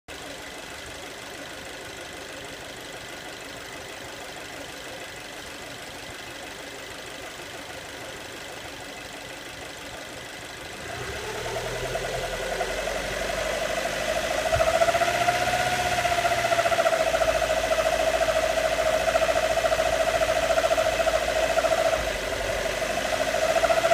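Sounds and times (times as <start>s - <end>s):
car engine running: 0.1s - 23.9s
wavering mid-pitched tone: 11.7s - 23.9s.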